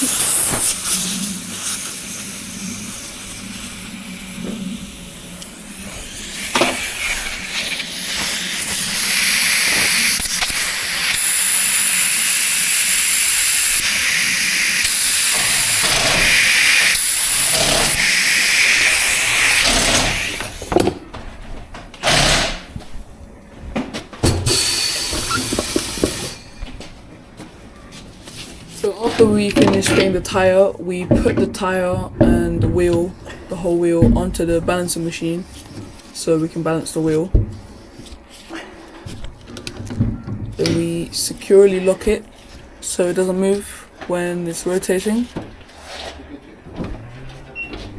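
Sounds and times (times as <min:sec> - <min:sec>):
compressed air hissing into tyre: 0:00.0 - 0:20.7, 0:24.4 - 0:26.4
short knocks: 0:29.1 - 0:35.0.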